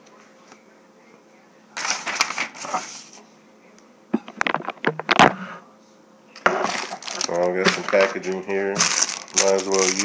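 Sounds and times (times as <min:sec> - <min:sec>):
paper rustling: 0:01.8 - 0:03.2, 0:06.7 - 0:10.0.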